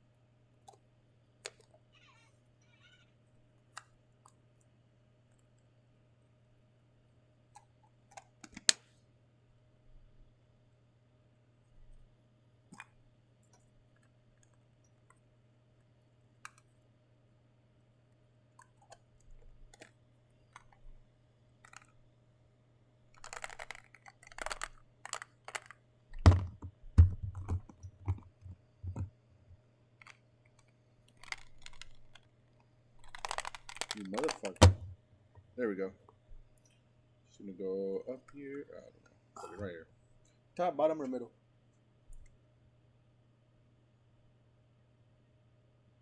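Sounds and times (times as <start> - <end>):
plastic parts clicking and tapping: 7.6 - 8.8, 18.6 - 20.8, 21.6 - 22.0, 23.2 - 29.1, 30.0 - 32.3, 33.0 - 35.0
packaging crinkling: 23.2 - 25.8, 31.1 - 32.2, 33.0 - 34.9
loud knocks of plastic pieces: 23.2 - 28.2, 33.0 - 35.0.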